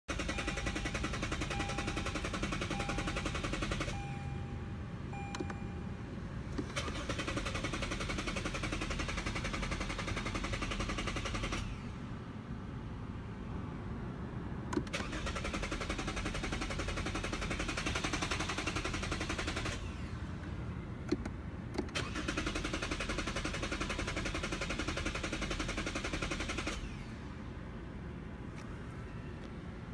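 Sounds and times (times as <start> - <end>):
car starter clicking rapidly: 0.1 - 4.0, 6.5 - 11.8, 14.8 - 20.0, 21.1 - 27.0.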